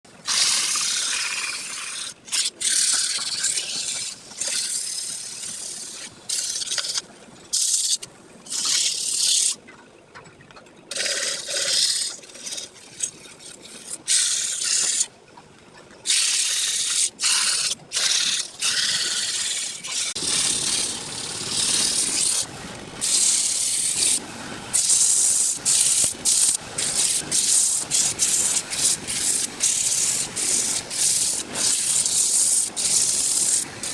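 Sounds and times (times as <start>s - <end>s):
tool scraping wood on lathe: 20.0s - 33.9s.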